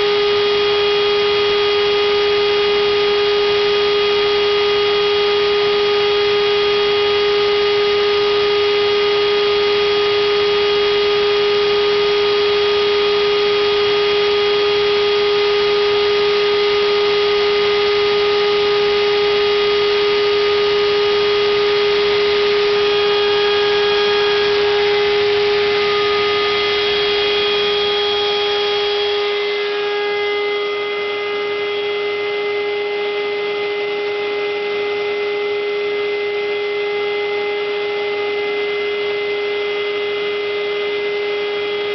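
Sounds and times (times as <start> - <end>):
router spindle motor whining: 0.0 - 31.9.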